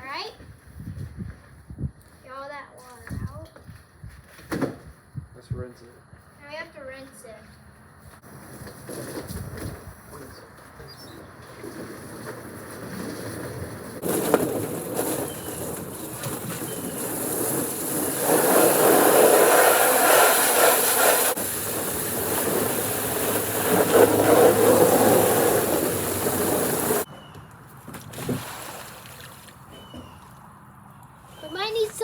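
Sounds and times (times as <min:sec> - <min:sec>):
water spraying from a hose: 0:14.0 - 0:27.1.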